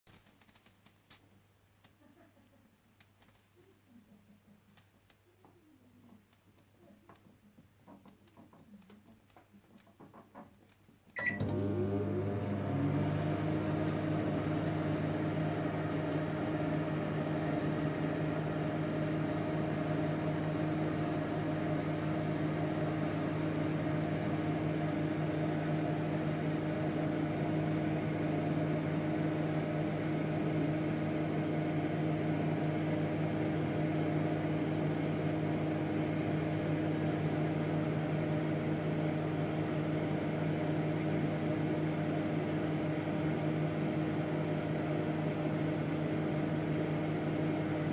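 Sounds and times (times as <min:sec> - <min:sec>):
microwave fan noise: 0:11.2 - 0:47.9
microwave oven humming: 0:11.2 - 0:47.9.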